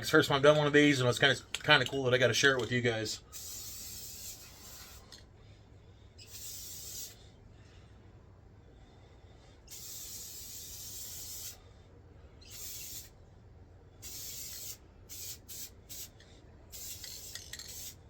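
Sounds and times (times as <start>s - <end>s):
spray can hissing: 3.3s - 5.2s, 6.2s - 7.2s, 9.7s - 11.6s, 12.5s - 13.1s, 14.0s - 16.1s, 16.7s - 18.0s.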